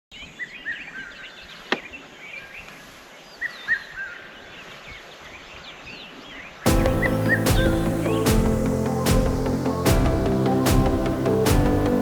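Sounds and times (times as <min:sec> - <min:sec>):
birds singing and chirping: 0:00.1 - 0:12.0.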